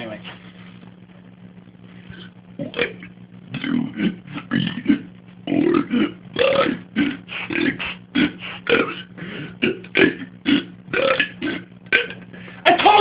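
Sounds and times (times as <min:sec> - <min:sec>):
man burp-talking: 0:02.6 - 0:12.2.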